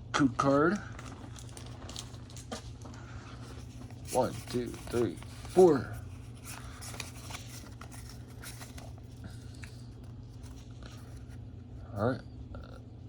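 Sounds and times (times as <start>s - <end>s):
trading cards being shuffled: 3.5s - 11.3s.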